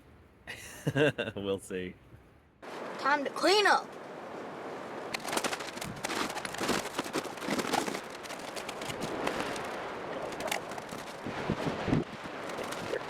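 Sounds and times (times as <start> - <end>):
camp gear clattering and rustling: 5.1 - 11.7.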